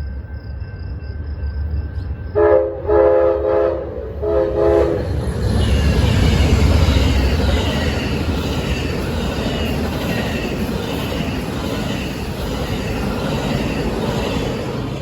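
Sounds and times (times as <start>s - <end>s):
train cars rumbling on rails: 0.0s - 15.0s.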